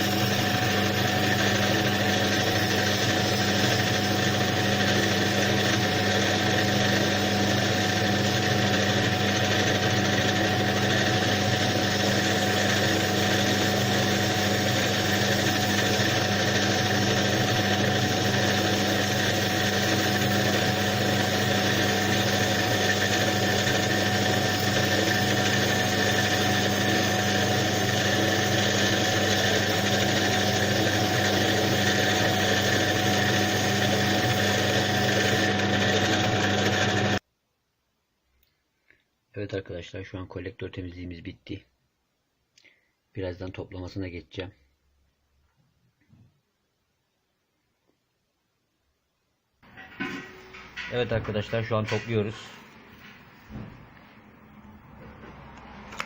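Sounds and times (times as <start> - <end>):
power tool motor humming: 0.0 - 37.2.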